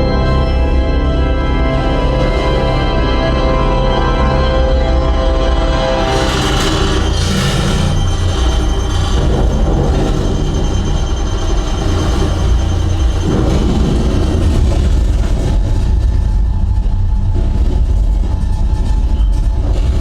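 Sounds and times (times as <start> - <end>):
deep bass rumble: 0.0 - 20.0
film score music: 0.0 - 20.0
film sound effects: 0.0 - 20.0.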